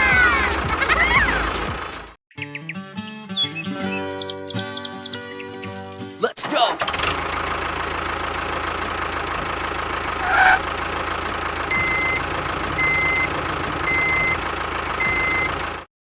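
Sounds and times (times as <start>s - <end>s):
truck engine running: 0.0s - 2.2s, 6.4s - 15.9s
reversing alarm beeping: 11.7s - 13.3s, 13.9s - 14.4s, 15.0s - 15.6s.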